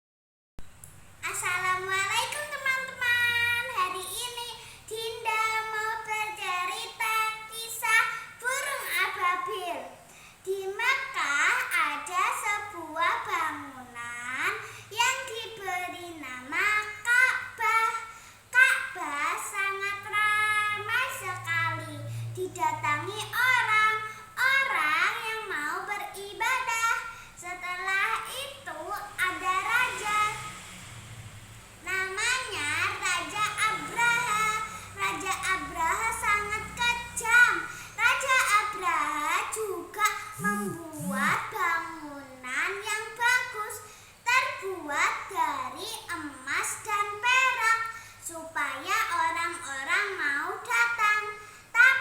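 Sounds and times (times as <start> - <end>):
child singing: 38.2 - 41.9.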